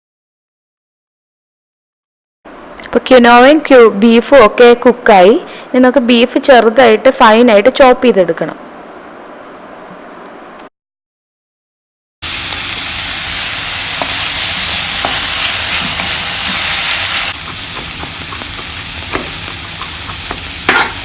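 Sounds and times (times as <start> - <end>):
food sizzling in frying pan: 12.2 - 21.0
utensil scraping against pan: 14.0 - 21.0.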